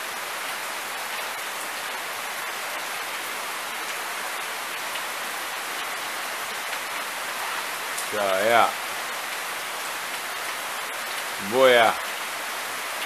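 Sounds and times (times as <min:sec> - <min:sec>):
heavy rain hissing: 0:00.0 - 0:13.0
raindrop ticks: 0:07.9 - 0:08.7.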